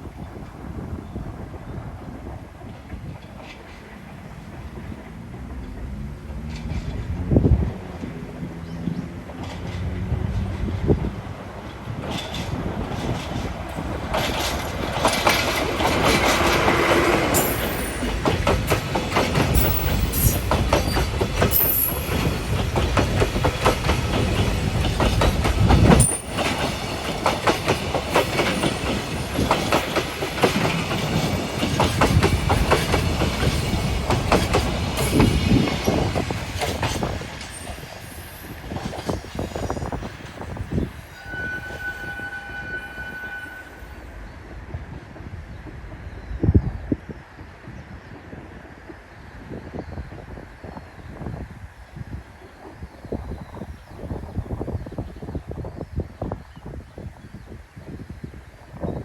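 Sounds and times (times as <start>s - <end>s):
low train rumble: 0.0s - 59.0s
train wheels clattering over rail joints: 2.2s - 41.0s.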